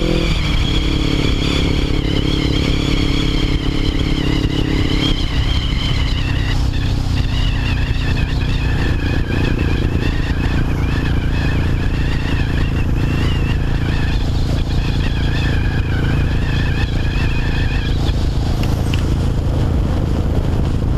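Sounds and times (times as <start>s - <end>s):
motorcycle engine running loud: 0.0s - 20.9s.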